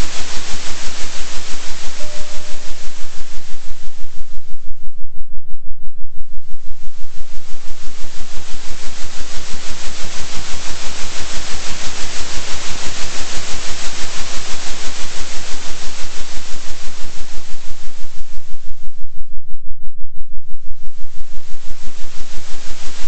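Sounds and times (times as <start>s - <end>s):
oscillating synthesized hiss: 0.0s - 5.0s, 6.1s - 19.2s, 20.5s - 23.0s
steady low hum: 0.0s - 23.0s.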